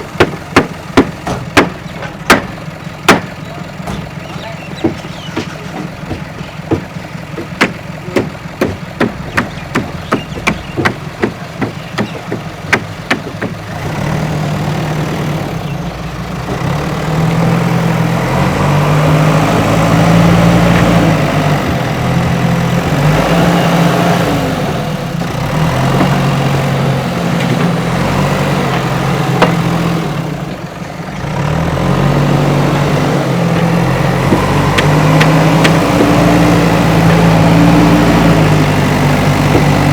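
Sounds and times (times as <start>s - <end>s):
diesel engine working: 0.0s - 39.9s
regular ticking: 0.2s - 13.8s, 32.3s - 39.9s.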